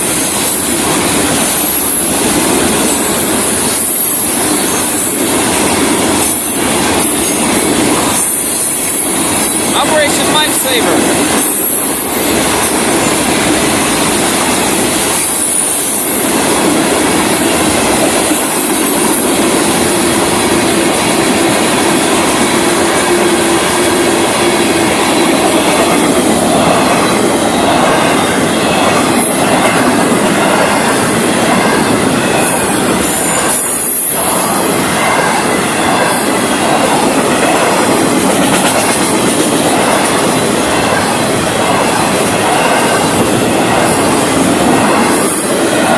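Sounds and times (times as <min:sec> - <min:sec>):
train wheels rumbling on rails: 0:00.0 - 0:45.9.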